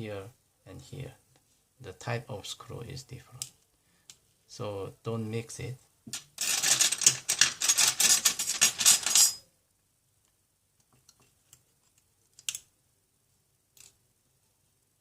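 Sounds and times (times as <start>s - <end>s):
metal tools clicking and rattling: 6.2s - 9.4s.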